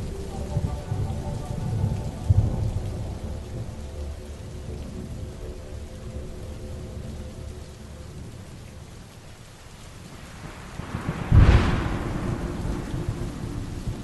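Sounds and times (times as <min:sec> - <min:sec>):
steady rain: 0:00.0 - 0:14.0
thunderclap and rumbling: 0:10.3 - 0:14.0.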